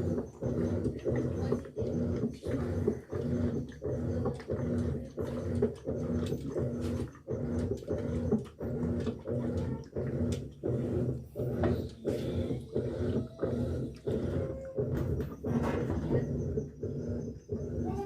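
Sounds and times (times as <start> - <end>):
washing machine motor humming: 0.0 - 18.0.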